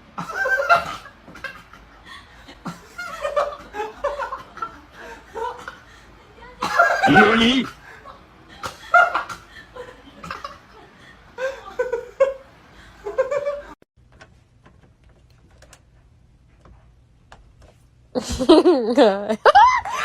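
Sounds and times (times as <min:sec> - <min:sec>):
person giggling: 0:06.8 - 0:07.7, 0:18.2 - 0:20.0.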